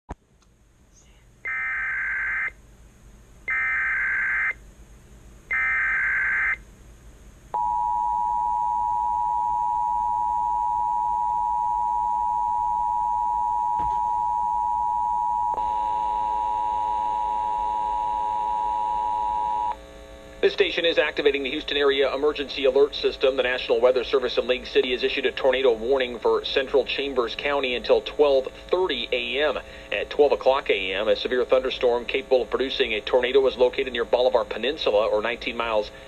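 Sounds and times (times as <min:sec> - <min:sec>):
buzzing tone: 0:01.4 - 0:02.6, 0:05.5 - 0:06.6, 0:07.6 - 0:20.2
screechy data bursts: 0:01.5 - 0:02.5, 0:05.5 - 0:06.6.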